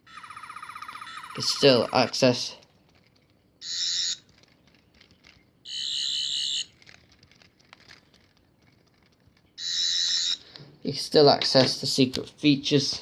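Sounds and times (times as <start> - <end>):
toy warbling electronic sound: 0.1 - 2.1, 3.6 - 4.2, 5.7 - 6.7, 9.6 - 10.4.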